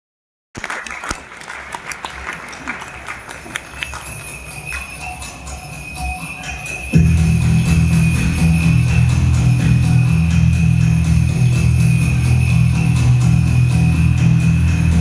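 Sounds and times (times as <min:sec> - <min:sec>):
music: 0:01.8 - 0:15.0
bells jingling: 0:02.0 - 0:15.0
steady high ringing: 0:03.2 - 0:15.0.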